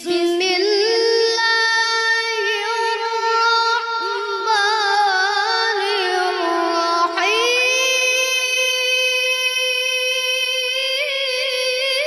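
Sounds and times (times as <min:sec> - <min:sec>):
child reciting melodically: 0:00.0 - 0:12.0.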